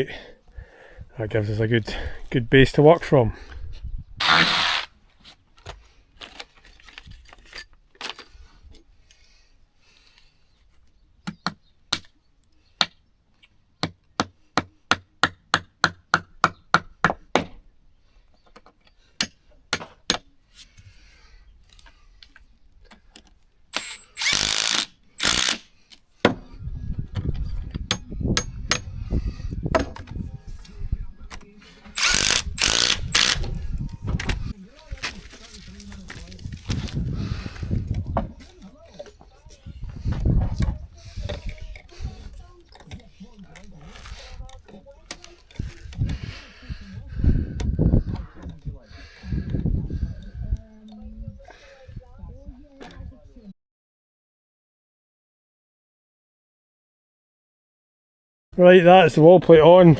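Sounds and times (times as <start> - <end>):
hammer driving nails into timber: 4.2 - 4.9, 23.8 - 26.4, 27.7 - 28.9, 32.0 - 33.6
power tool bursts: 4.2 - 4.9, 23.8 - 25.7, 32.0 - 33.5.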